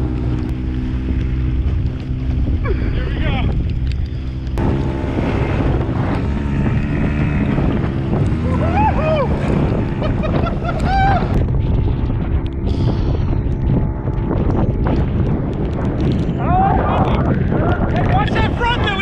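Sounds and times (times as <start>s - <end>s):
waves: 0.0s - 12.9s
outboard engine running: 0.0s - 19.0s
wind on microphone: 0.0s - 19.0s.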